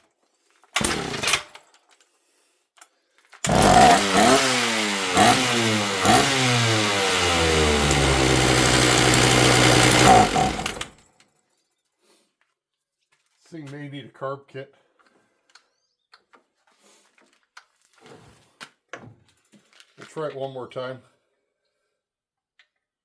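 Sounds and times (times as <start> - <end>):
chainsaw engine sputtering and revving: 0.8 - 1.4, 3.5 - 11.0.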